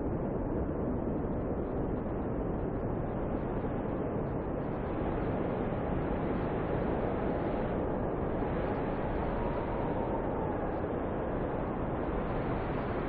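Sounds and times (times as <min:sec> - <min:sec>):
snowstorm wind rushing: 0:00.2 - 0:13.0.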